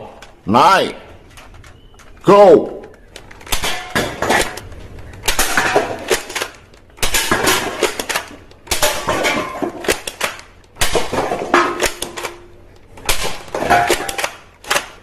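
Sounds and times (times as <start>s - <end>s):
toy guns clicking: 4.4s - 9.0s, 9.8s - 10.8s, 11.8s - 13.2s, 13.9s - 15.0s.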